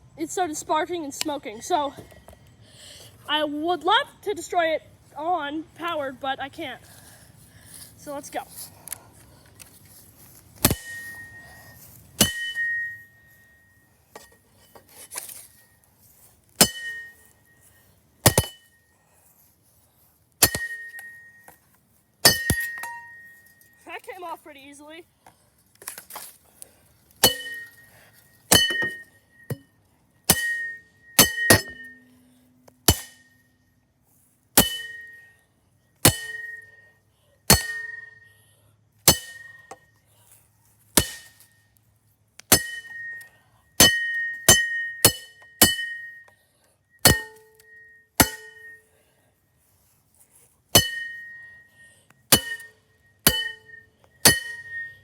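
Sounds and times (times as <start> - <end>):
ceiling fan part struck ringing: 12.2 - 13.7, 16.6 - 17.3, 27.2 - 27.9, 28.5 - 29.7, 30.3 - 33.5.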